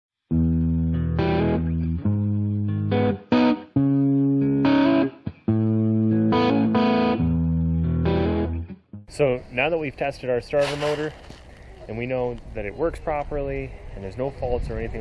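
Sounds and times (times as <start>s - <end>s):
guitar chords: 0.3s - 9.2s.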